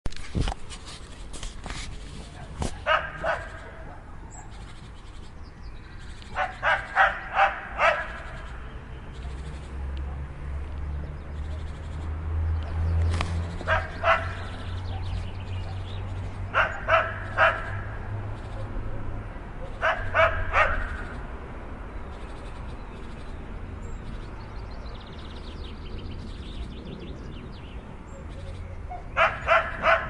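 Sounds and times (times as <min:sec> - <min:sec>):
dog barking: 0:02.3 - 0:04.6, 0:06.4 - 0:08.2, 0:13.7 - 0:15.9, 0:16.5 - 0:18.0, 0:18.6 - 0:21.0, 0:28.9 - 0:30.0.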